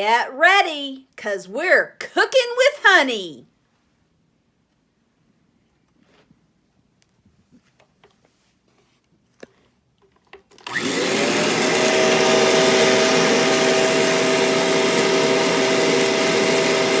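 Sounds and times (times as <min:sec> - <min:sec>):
vacuum cleaner whining: 0:10.6 - 0:17.0.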